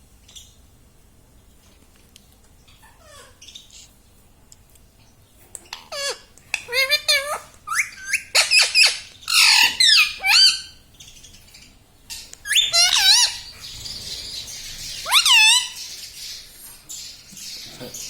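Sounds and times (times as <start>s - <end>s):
parrot squawking: 5.7s - 10.8s, 12.1s - 16.1s.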